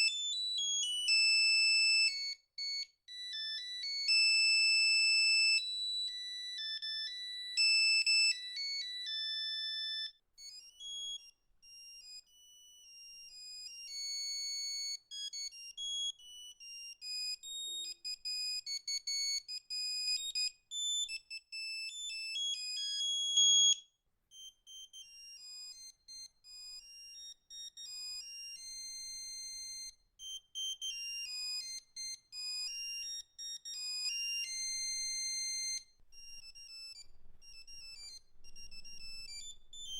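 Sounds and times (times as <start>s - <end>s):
monophonic ringtone melody: 3.1s - 10.1s, 26.8s - 39.9s.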